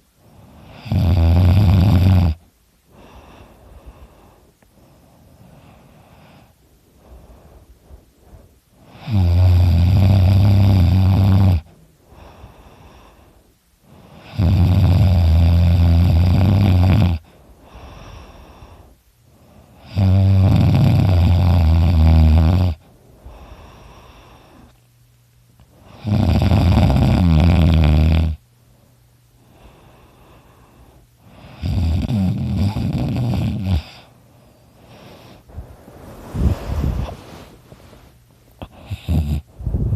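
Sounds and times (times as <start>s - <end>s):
quiet breathing: 0.0s - 1.0s, 2.3s - 14.6s, 17.0s - 20.1s, 22.7s - 26.1s, 28.4s - 39.9s
man snoring loudly: 0.6s - 2.4s, 8.9s - 11.7s, 14.2s - 17.2s, 19.8s - 22.8s, 26.0s - 28.4s, 31.4s - 34.0s, 38.6s - 39.5s.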